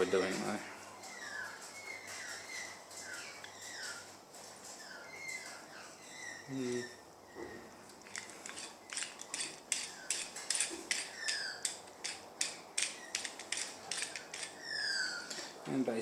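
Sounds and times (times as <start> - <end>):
metal vice clicking and rattling: 8.4 - 14.6.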